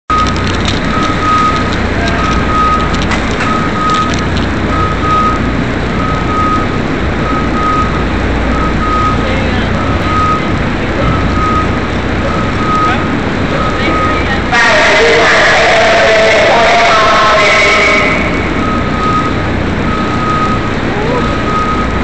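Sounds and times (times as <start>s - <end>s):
engine running hum: 0.1s - 22.0s
vehicle back-up alarm beeping: 0.1s - 22.0s.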